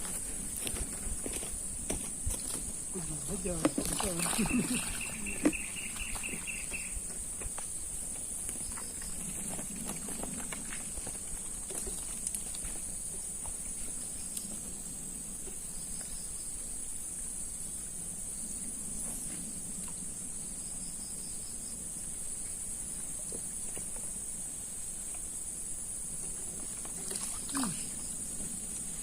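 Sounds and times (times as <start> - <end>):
insects droning: 0.0 - 29.0
bird trills: 4.3 - 7.0.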